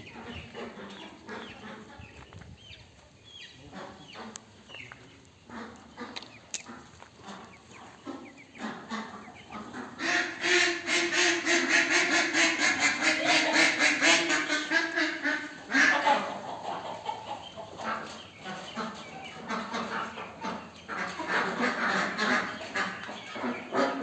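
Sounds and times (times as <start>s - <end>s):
ducks quacking rapidly: 0.0s - 2.2s, 3.6s - 4.5s, 5.4s - 24.0s
ducks peeping: 0.0s - 24.0s.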